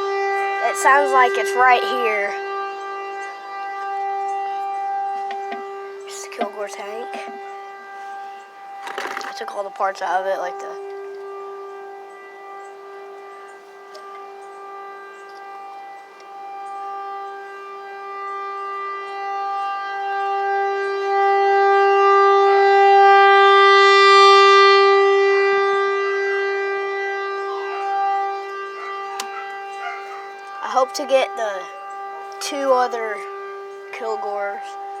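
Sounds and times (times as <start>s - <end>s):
tornado warning siren wailing: 0.0s - 35.0s.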